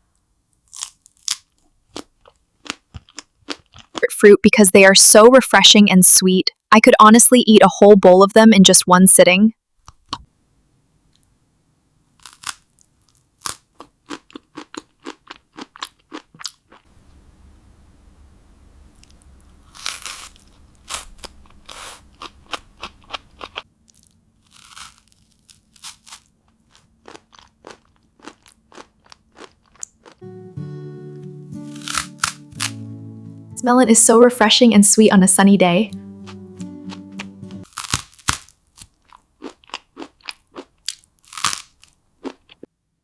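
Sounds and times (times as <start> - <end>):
crisp crunching bites: 0.7 - 4.0, 12.2 - 16.8, 19.0 - 30.2, 31.6 - 32.8, 37.6 - 42.6
chewing: 0.8 - 4.1, 12.2 - 17.2, 19.0 - 30.2, 36.3 - 42.7.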